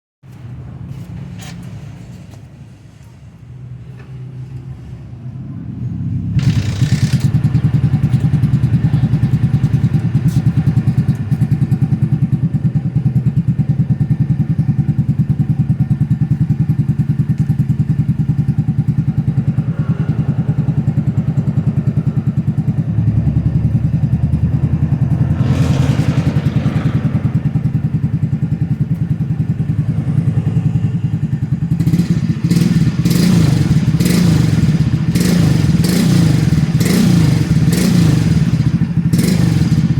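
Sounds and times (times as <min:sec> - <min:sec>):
motorcycle engine idling and revving: 0:00.3 - 0:39.9.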